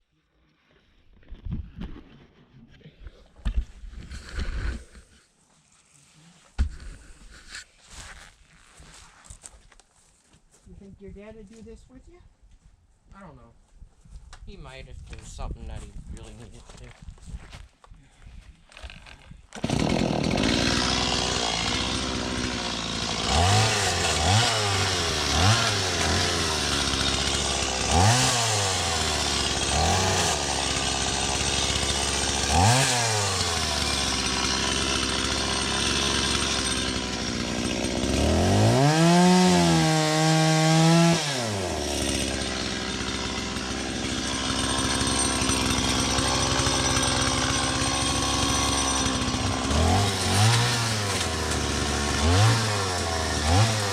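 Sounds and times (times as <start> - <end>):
chainsaw engine idling and revving: 18.7 - 53.9.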